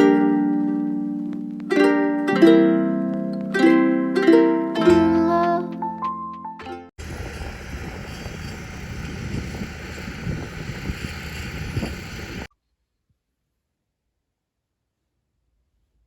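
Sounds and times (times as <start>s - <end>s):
ukulele plucking: 0.0s - 6.9s
rumbling wind-like noise: 7.0s - 12.5s.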